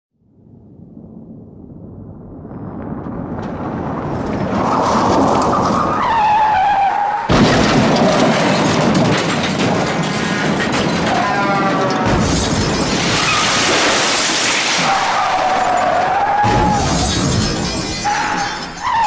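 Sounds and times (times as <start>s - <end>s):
loud crash impact: 7.3s - 11.2s, 12.0s - 18.8s
wreck clattering: 7.3s - 19.0s.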